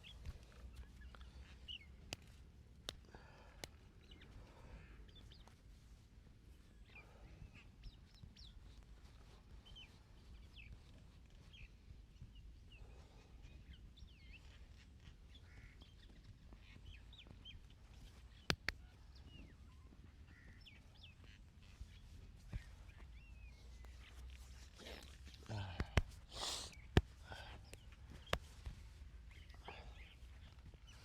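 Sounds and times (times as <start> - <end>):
small birds chirping: 0.0 - 31.0.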